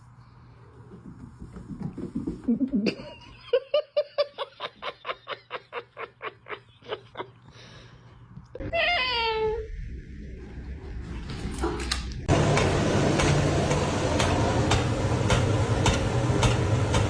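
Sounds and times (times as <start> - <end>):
person laughing: 2.3 - 7.7.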